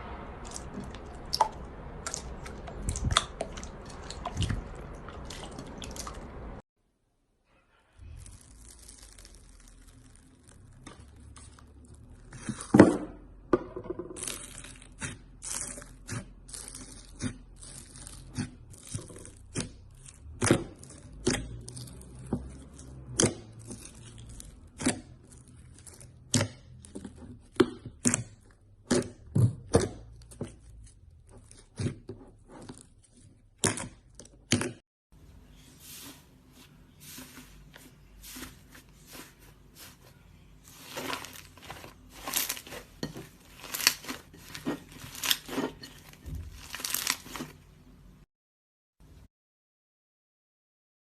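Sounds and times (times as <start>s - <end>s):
slime popping and crackling: 8.1s - 12.7s, 14.2s - 29.1s, 40.7s - 47.6s.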